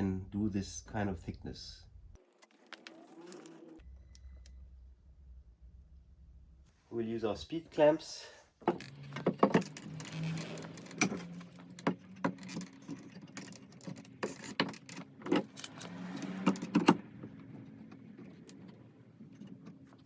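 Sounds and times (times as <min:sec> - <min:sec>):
low steady hum: 0:03.8 - 0:07.9
clamps clicking and rattling: 0:08.7 - 0:17.0.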